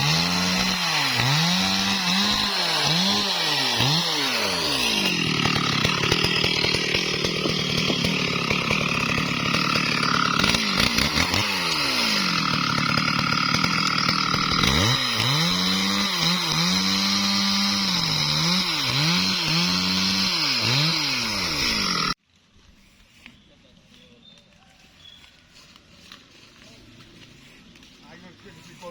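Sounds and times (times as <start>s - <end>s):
chainsaw running at high revs: 0.0s - 22.2s.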